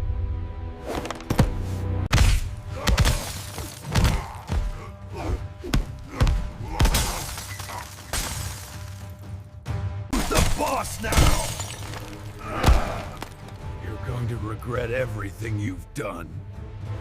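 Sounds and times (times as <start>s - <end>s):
background music: 0.0s - 17.0s
crashing shattering impacts: 6.8s - 9.1s, 10.1s - 13.6s.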